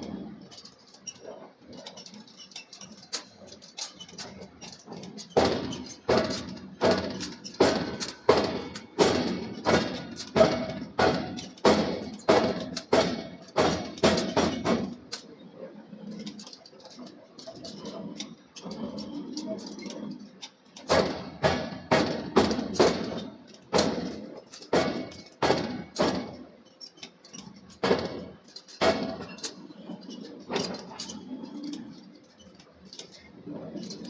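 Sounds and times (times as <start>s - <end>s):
forging hammer striking steel: 5.4s - 15.0s, 20.9s - 26.4s, 27.8s - 29.4s.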